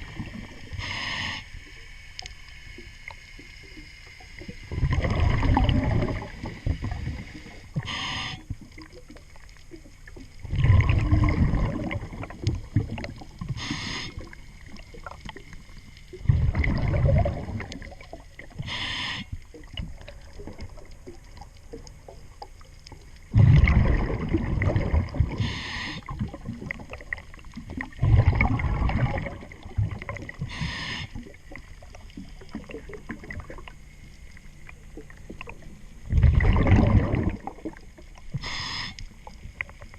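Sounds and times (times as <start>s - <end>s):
exhaled air bubbling: 0.0s - 39.9s
regulator inhale hiss: 0.7s - 1.8s, 7.0s - 8.6s, 13.5s - 14.4s, 18.6s - 19.4s, 25.3s - 26.1s, 30.5s - 31.2s, 38.3s - 39.2s.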